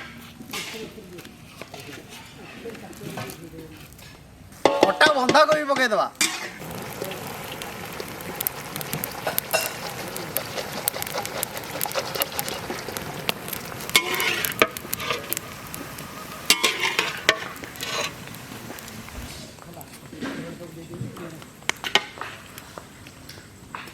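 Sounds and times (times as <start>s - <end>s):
vegetables sizzling in oil: 4.2s - 23.9s
spatula scraping pan: 7.9s - 19.6s.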